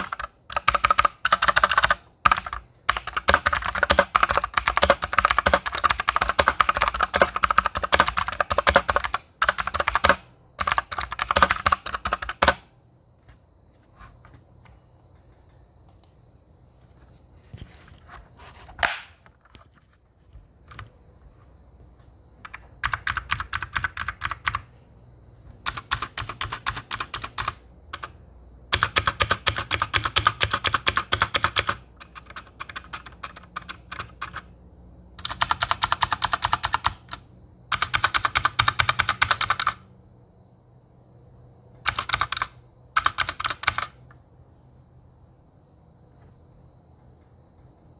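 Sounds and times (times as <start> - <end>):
clicky mechanical keyboard typing: 0.0 - 12.7, 22.4 - 24.7, 25.6 - 34.5, 35.2 - 39.9, 41.8 - 44.2.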